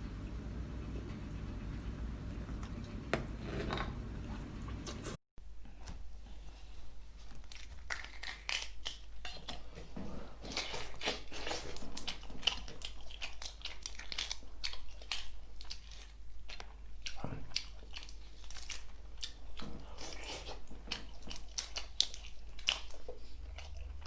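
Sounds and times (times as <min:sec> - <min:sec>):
shellfish crackling and crunching: 0:07.4 - 0:09.5.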